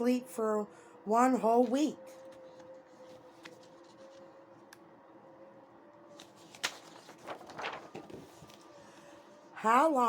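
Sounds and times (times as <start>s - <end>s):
faint steady hum: 0.0s - 10.0s
paper rustling: 1.6s - 4.8s, 6.1s - 9.4s.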